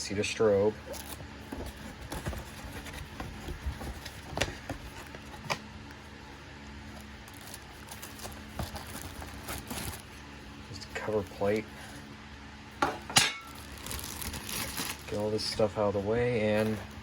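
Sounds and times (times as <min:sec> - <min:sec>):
cardboard box rustling and tapping: 0:01.0 - 0:05.7, 0:07.3 - 0:10.1.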